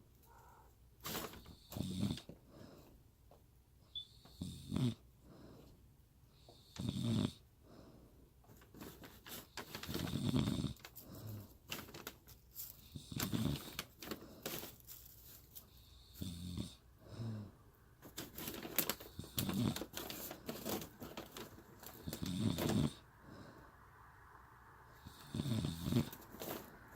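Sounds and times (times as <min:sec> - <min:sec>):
woman snoring: 0:01.6 - 0:02.3, 0:04.3 - 0:05.0, 0:06.6 - 0:07.4, 0:10.0 - 0:11.5, 0:22.0 - 0:23.1, 0:25.0 - 0:26.3.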